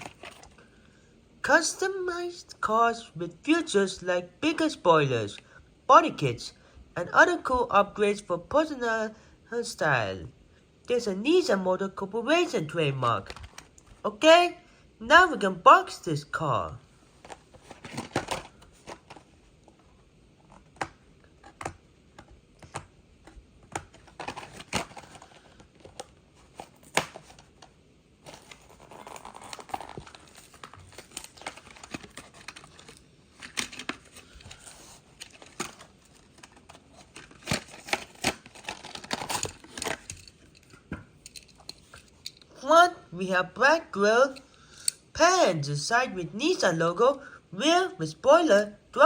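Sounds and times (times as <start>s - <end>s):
card backing tearing: 0.0s - 0.6s, 23.7s - 27.6s, 28.2s - 40.1s
plastic blister clicking and crinkling: 28.3s - 42.4s.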